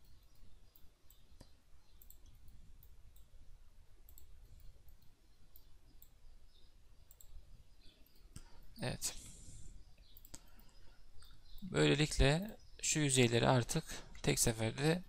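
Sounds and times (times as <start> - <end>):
computer mouse clicks: 0.0 - 3.4, 4.0 - 8.7, 10.0 - 11.7
low background hum: 0.0 - 15.0.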